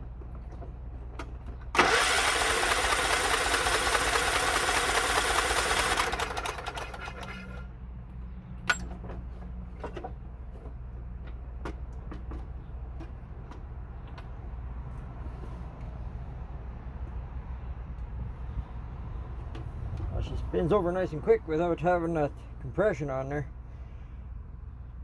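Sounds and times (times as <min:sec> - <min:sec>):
electric starter cranking engine: 0:01.7 - 0:07.6.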